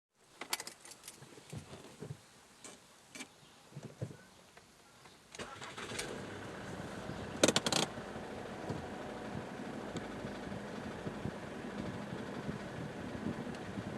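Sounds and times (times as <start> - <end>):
diesel engine running: 5.4 - 13.9.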